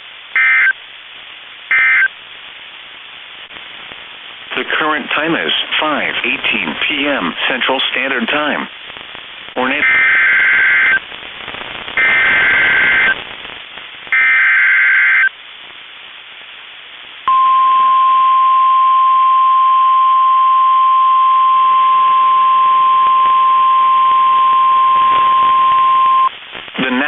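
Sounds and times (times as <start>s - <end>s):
radio hiss: 0.0s - 17.3s, 21.9s - 27.0s
steady warning alarm tone: 0.4s - 0.7s, 1.7s - 2.1s, 9.8s - 11.0s, 12.0s - 13.2s, 14.2s - 15.3s, 17.3s - 26.3s
harsh two-tone data warble: 0.4s - 0.8s, 1.7s - 2.1s, 9.6s - 11.1s, 11.7s - 13.3s, 14.1s - 15.3s, 21.5s - 27.0s.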